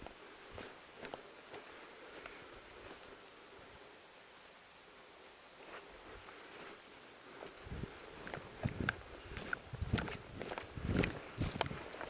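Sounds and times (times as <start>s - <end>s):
footsteps on outdoor ground: 0.0s - 3.2s, 5.6s - 12.0s
small sharp clicks: 8.3s - 11.8s.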